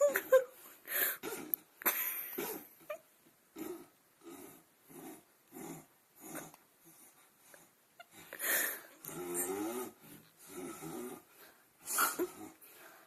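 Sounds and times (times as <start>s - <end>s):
person snoring: 8.4s - 11.3s.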